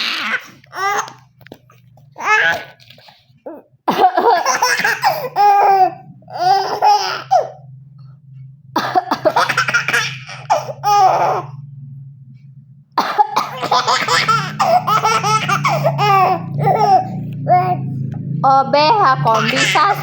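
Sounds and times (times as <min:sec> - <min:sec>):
baby laughing: 0:00.0 - 0:07.6, 0:08.9 - 0:11.5, 0:13.2 - 0:18.0, 0:19.2 - 0:20.0
low steady hum: 0:00.0 - 0:20.0.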